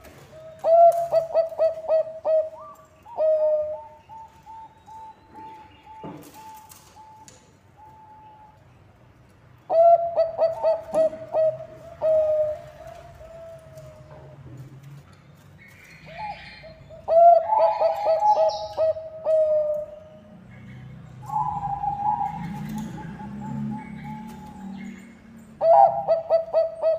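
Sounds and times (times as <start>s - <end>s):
dove cooing: 0.3s - 7.2s, 9.7s - 14.4s, 16.1s - 20.3s, 21.2s - 24.8s, 25.6s - 26.9s.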